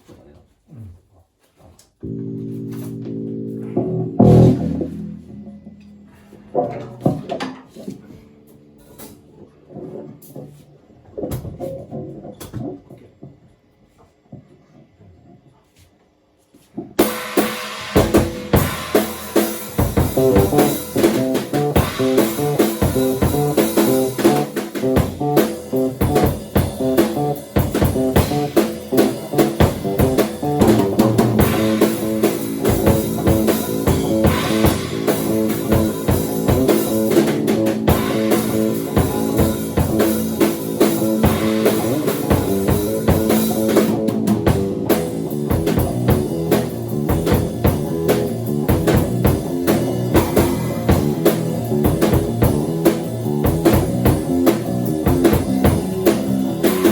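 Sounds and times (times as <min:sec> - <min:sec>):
bass line: 0:02.0 - 0:07.4, 0:19.7 - 0:56.9
drum kit hits: 0:02.1 - 0:07.9, 0:17.0 - 0:56.9.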